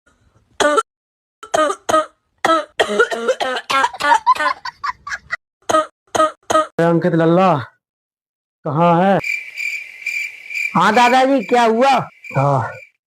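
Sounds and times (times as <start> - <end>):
person coughing: 1.4 - 4.6, 5.7 - 6.8.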